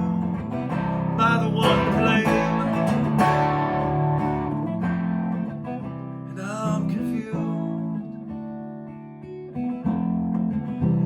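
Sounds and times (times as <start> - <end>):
person singing: 0.0 - 3.4, 6.4 - 8.0
guitar strumming chords: 0.0 - 11.0.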